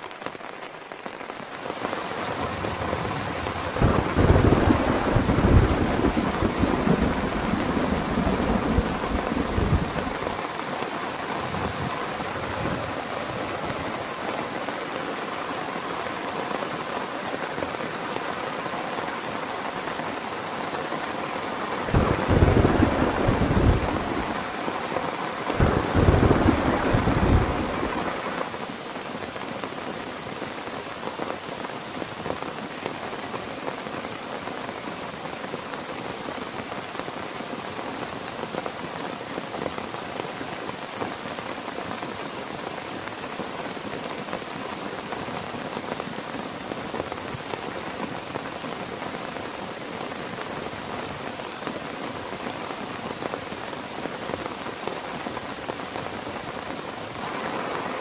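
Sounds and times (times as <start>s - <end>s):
heavy rain: 0.0s - 58.0s
thunder rumbling: 2.0s - 10.5s, 21.9s - 24.8s, 25.5s - 28.4s.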